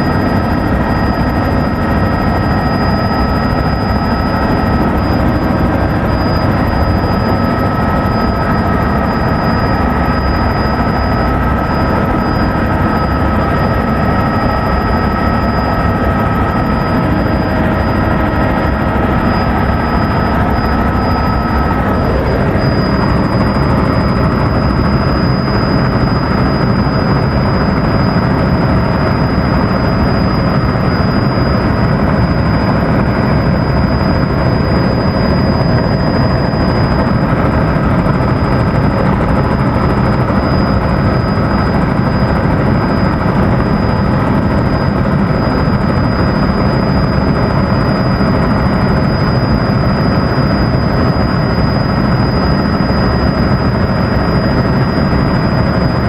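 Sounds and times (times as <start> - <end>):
helicopter turbine and rotor: 0.0 - 56.0
thin high whine: 0.0 - 56.0.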